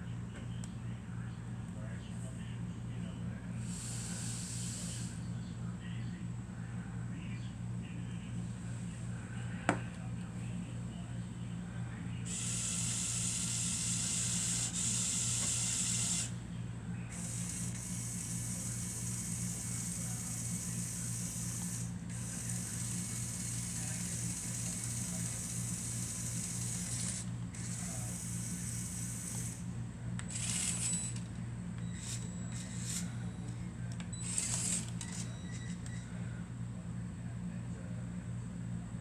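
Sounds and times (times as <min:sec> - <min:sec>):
steady low hum: 0:00.0 - 0:39.0
toy electric motors whirring: 0:03.6 - 0:05.2, 0:12.3 - 0:16.4, 0:17.1 - 0:36.0
high motor whine: 0:12.3 - 0:16.5, 0:17.1 - 0:36.0.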